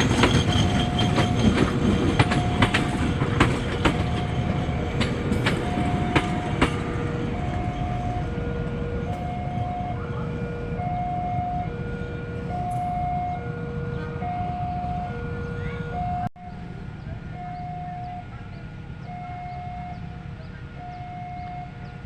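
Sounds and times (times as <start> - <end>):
train wheels clicking over rails: 0.0 - 9.3
two-tone electronic warning signal: 0.0 - 16.6, 17.3 - 18.4, 19.0 - 22.0.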